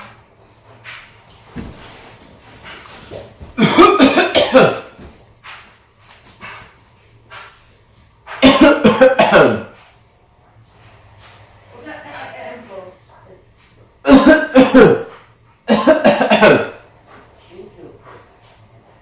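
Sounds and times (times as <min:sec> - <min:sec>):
person coughing: 0:03.6 - 0:05.0, 0:08.4 - 0:09.8, 0:14.1 - 0:15.1, 0:15.7 - 0:16.8.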